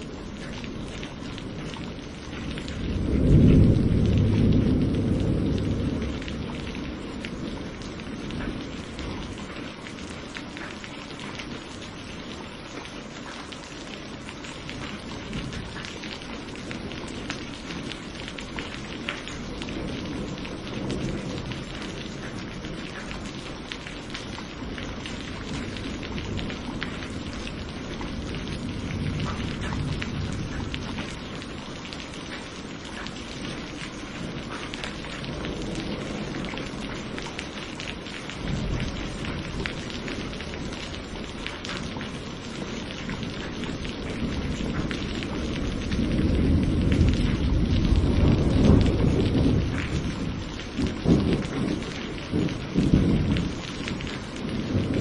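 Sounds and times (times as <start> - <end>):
distant thunder rumbles: 0.0 - 9.8, 14.6 - 55.0
heavy rain pattering: 0.0 - 55.0
thunder rolling: 0.8 - 9.0, 33.6 - 55.0.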